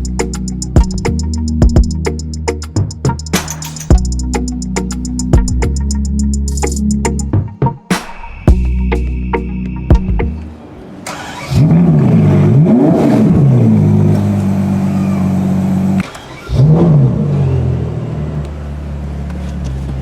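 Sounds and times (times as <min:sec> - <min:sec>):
car engine revving and idling: 0:10.4 - 0:20.0.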